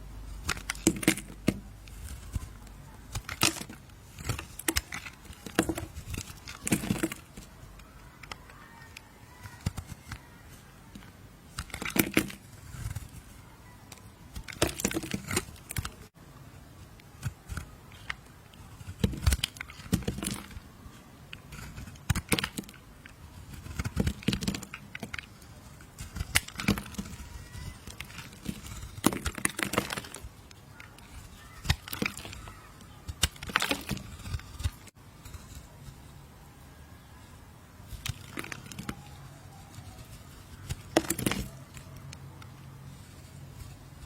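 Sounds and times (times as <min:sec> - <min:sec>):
knife cutting through soap: 0:00.3 - 0:16.0, 0:16.8 - 0:20.6, 0:21.3 - 0:35.8.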